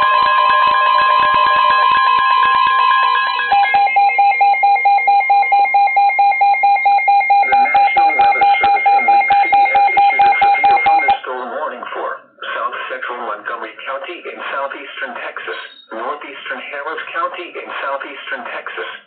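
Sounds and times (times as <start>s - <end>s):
rapid electronic beeping: 0.0s - 11.2s
steady high alarm tone: 0.0s - 11.2s.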